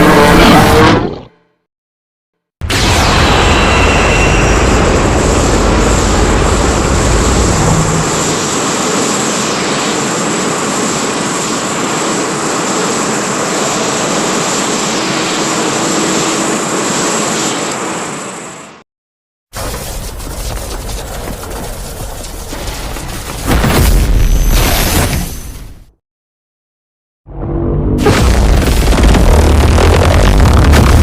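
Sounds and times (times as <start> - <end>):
monster roar: 0.0 - 1.3.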